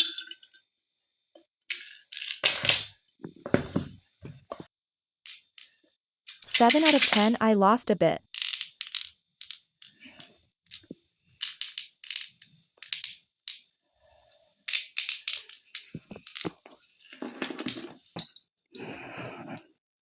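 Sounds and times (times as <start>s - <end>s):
fidget toy crackling and crunching: 8.2s - 10.0s.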